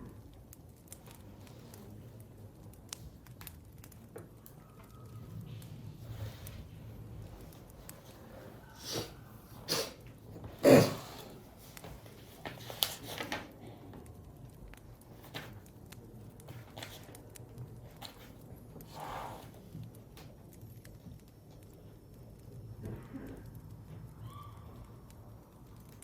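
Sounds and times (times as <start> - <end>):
person coughing: 10.6 - 11.3.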